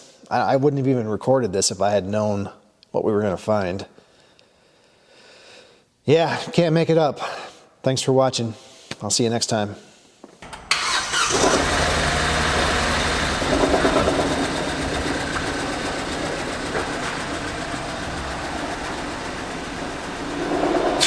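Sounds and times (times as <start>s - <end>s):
vehicle engine starting and running: 10.4s - 21.0s.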